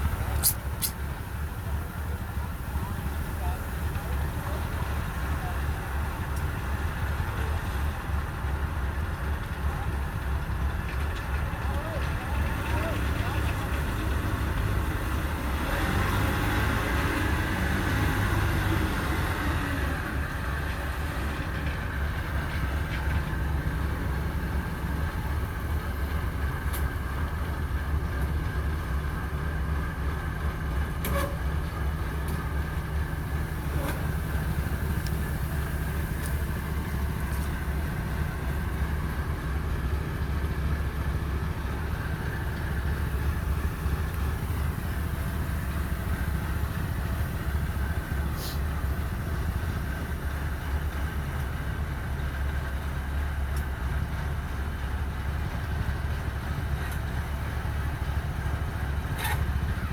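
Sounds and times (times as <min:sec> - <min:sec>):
combine harvester droning: 0:00.0 - 0:59.9.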